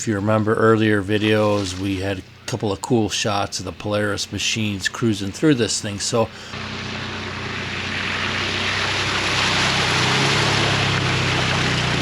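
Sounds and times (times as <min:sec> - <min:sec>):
excavator diesel engine running: 0:06.1 - 0:12.0.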